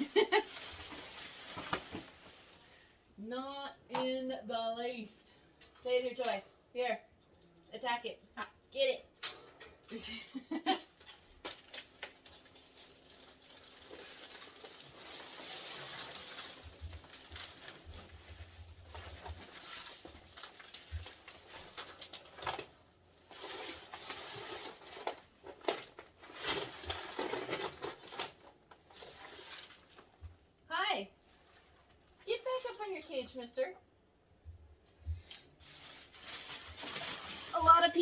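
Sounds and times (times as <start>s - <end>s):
rustling and scraping: 0.0s - 2.9s, 11.0s - 30.4s, 34.8s - 38.0s.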